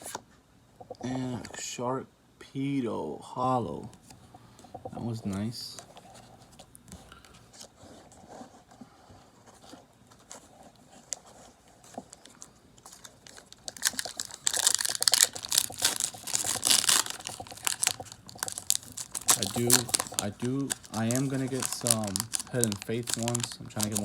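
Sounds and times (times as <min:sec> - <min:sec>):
foil wrapper crinkling: 0:11.9 - 0:24.0.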